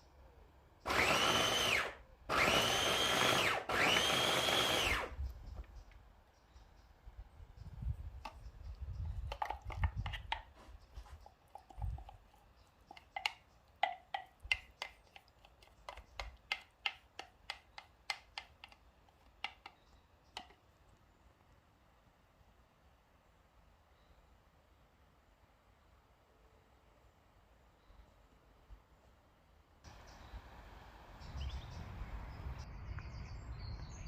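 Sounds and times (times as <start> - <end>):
light sharp clicking taps: 12.9 - 20.6.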